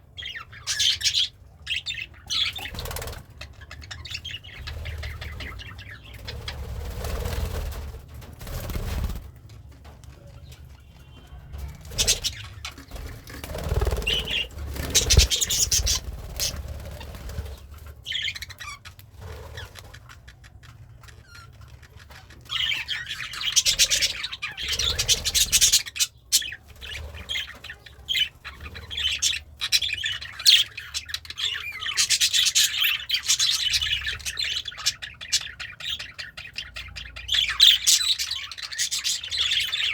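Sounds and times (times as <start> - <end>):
budgie chattering and chirping: 0.2 - 6.6, 11.8 - 39.9
wings fluttering: 2.3 - 10.9, 11.5 - 29.8.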